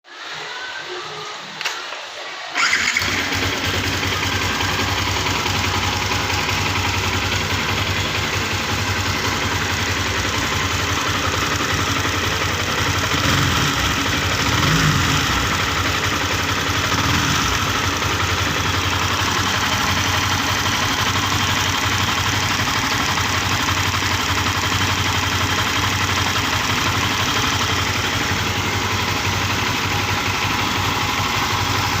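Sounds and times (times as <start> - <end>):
motorcycle engine starting and idling: 2.5 - 32.0.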